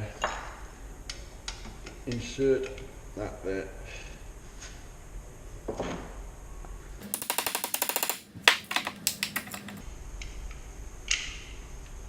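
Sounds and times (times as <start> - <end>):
sharp clicks: 7.0 - 9.8.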